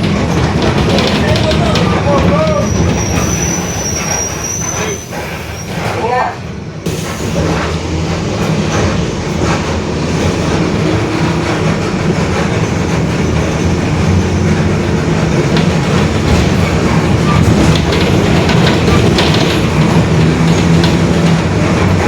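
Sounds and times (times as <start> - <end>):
bus diesel engine drone: 6.6 - 22.0.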